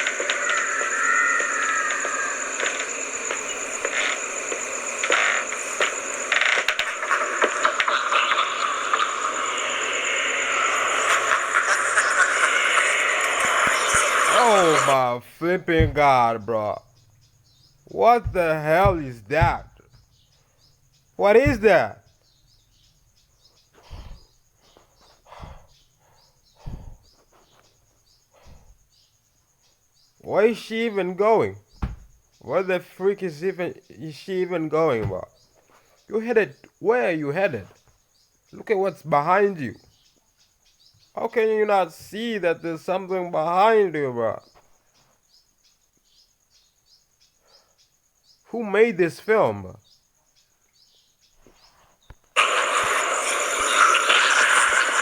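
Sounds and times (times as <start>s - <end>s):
faint bird chirps: 0.0s - 55.0s
soft low thuds: 15.6s - 20.4s, 21.4s - 22.8s, 31.7s - 32.3s.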